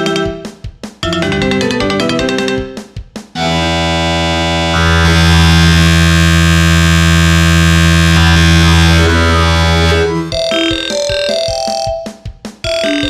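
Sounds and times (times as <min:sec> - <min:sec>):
buzzing synthesized chord: 0:03.4 - 0:10.3.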